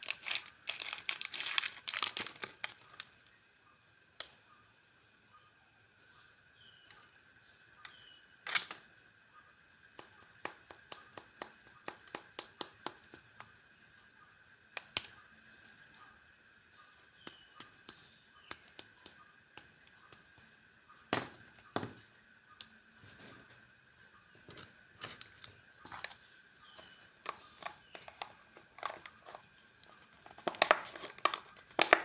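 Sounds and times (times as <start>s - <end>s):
plastic packaging crackling: 0.0s - 3.1s, 8.4s - 8.8s, 24.5s - 32.0s.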